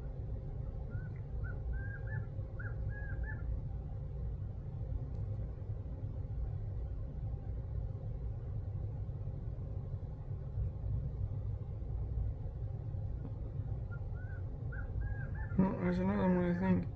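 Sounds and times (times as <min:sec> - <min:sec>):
steady low rumble: 0:00.0 - 0:16.9.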